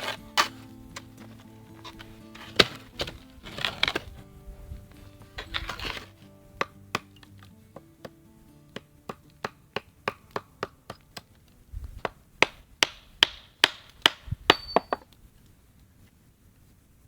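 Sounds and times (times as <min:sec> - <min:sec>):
hammer driving nail into wood: 0:05.6 - 0:11.3, 0:12.0 - 0:15.0.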